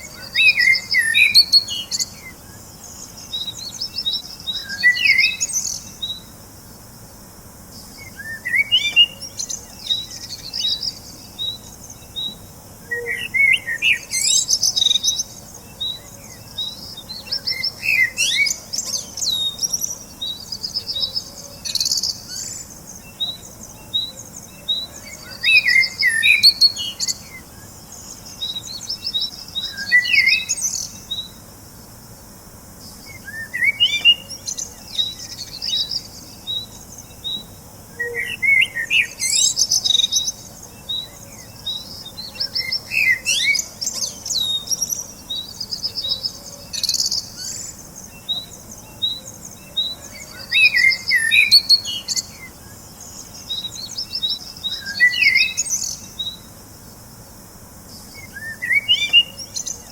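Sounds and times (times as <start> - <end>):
birds chirping and singing: 0.0 - 6.4, 7.7 - 31.5, 32.8 - 56.5, 58.0 - 59.9.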